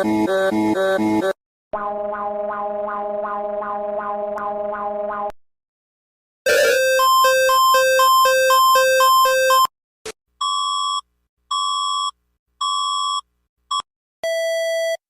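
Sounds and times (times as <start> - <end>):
two-pitch electronic alarm: 6.5 - 9.7.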